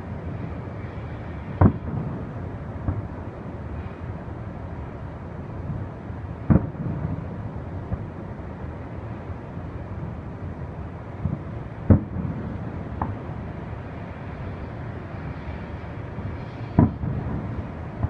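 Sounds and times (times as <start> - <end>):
low background rumble: 0.0 - 18.0
distant fireworks booms: 1.4 - 3.2, 6.4 - 8.2, 11.2 - 13.3, 16.3 - 18.0.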